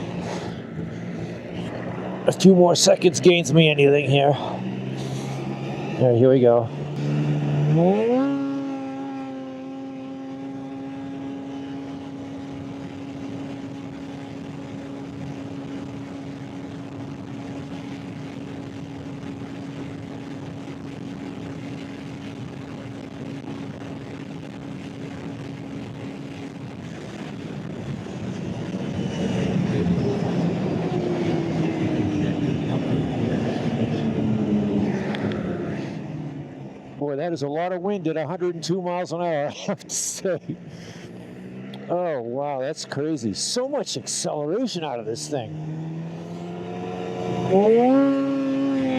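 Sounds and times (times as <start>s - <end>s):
snowmobile engine accelerating: 0.0s - 48.9s
wind rush on microphone: 10.7s - 37.0s.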